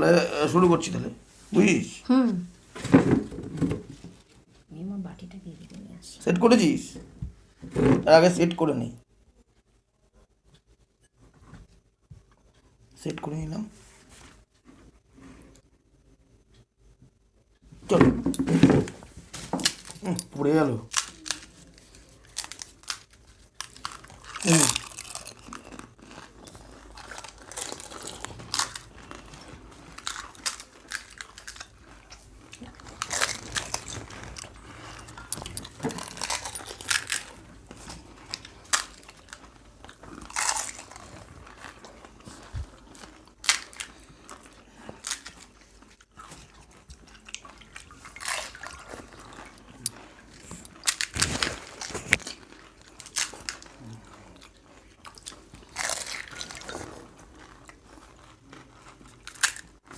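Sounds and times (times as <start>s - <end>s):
crisp shells crunching: 19.3s - 59.9s
wet chewing: 19.6s - 59.9s.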